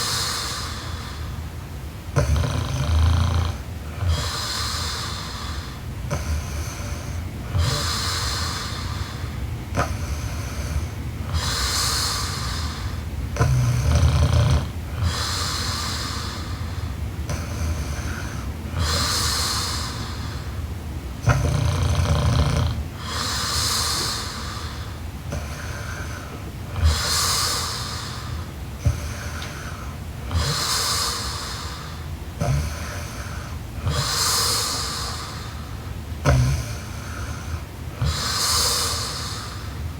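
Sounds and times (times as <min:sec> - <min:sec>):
hissing rush of air: 0:00.0 - 0:01.7, 0:15.0 - 0:21.8, 0:22.9 - 0:39.9
woman snoring: 0:02.1 - 0:20.5, 0:21.2 - 0:39.9.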